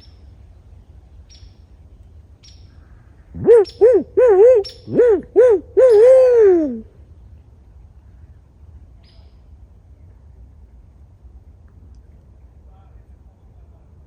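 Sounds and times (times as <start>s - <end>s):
owl hooting: 3.3s - 6.9s.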